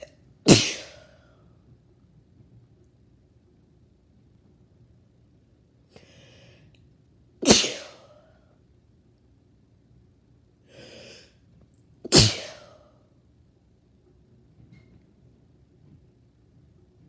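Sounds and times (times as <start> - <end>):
person sneezing: 0.0 - 1.2, 7.4 - 8.2, 12.1 - 12.8.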